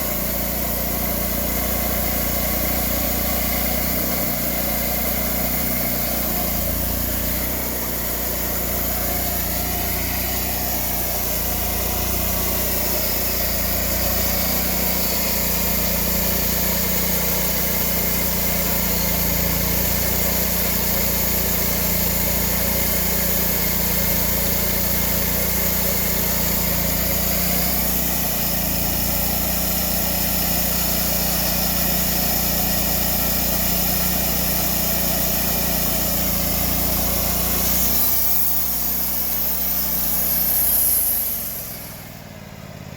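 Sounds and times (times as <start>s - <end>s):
small petrol engine running: 0.0s - 42.9s.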